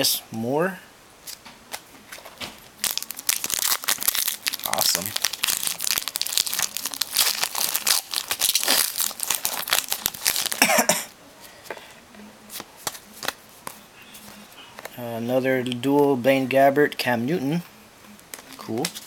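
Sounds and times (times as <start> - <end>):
foil wrapper tearing and crinkling: 1.3 - 10.8
cards clicking and rustling: 12.5 - 14.9.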